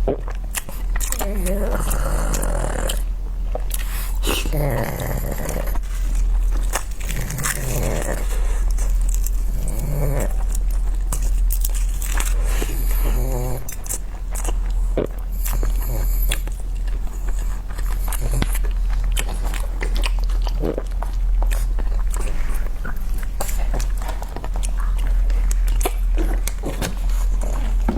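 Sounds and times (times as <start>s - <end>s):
person biting and chewing food: 5.4s - 15.7s, 16.3s - 27.9s.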